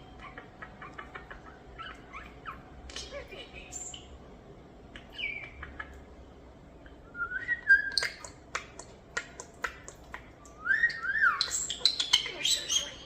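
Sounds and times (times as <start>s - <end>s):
starlings whistling: 7.1s - 8.3s, 10.4s - 13.0s.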